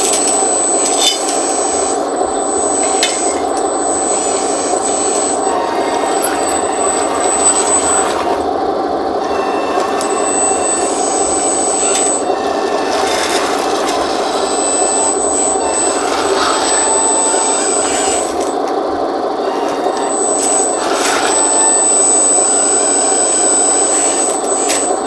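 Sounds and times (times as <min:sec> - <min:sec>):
high motor whine: 0:00.0 - 0:25.0
hydraulic pump humming: 0:00.0 - 0:25.0.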